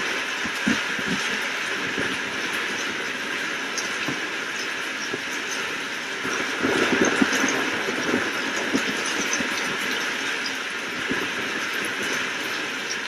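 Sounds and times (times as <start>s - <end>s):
steady rain: 0.0s - 13.0s
crackling thunder rumble: 6.2s - 9.8s.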